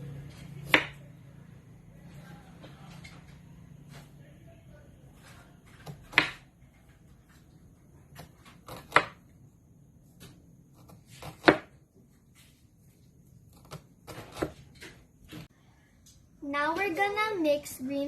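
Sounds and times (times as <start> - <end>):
knife chopping on cutting board: 0.3 - 1.0, 5.7 - 6.5, 8.1 - 9.2, 10.2 - 11.8, 13.6 - 14.6.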